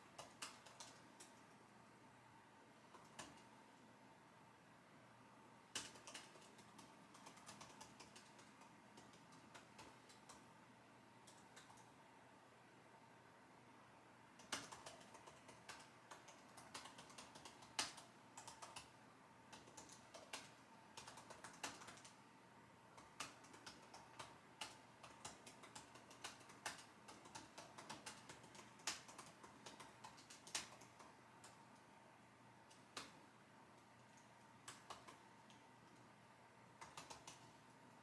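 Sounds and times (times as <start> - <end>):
typing on computer keyboard: 0.0 - 1.6, 2.8 - 3.5, 5.7 - 10.5, 11.2 - 12.0, 14.4 - 22.2, 22.9 - 31.9, 32.6 - 36.1, 36.7 - 37.9.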